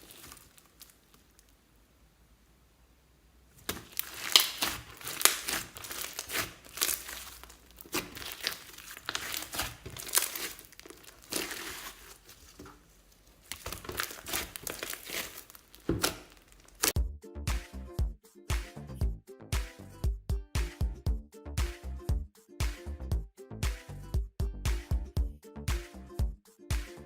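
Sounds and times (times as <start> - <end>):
slime crackling and popping: 0.0 - 1.6, 3.5 - 17.0.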